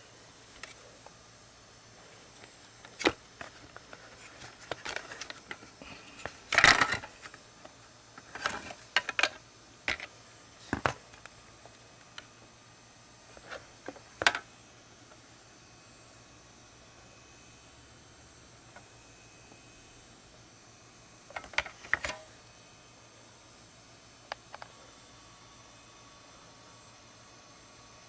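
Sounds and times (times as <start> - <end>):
parts clattering: 2.3 - 7.4, 8.2 - 10.1, 21.3 - 22.3
plastic parts clicking and knocking: 2.8 - 7.4, 8.2 - 10.1, 13.4 - 14.4, 21.3 - 22.2.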